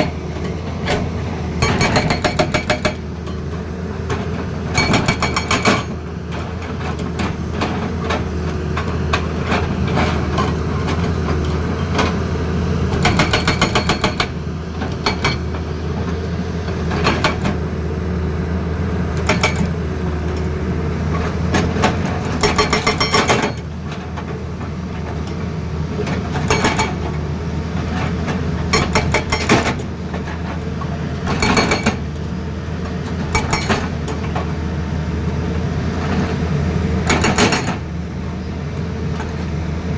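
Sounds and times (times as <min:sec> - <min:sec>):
diesel engine running: 0:00.0 - 0:39.9
hydraulic breaker hammering: 0:01.6 - 0:03.0, 0:12.9 - 0:14.4, 0:22.4 - 0:23.6, 0:37.0 - 0:37.8.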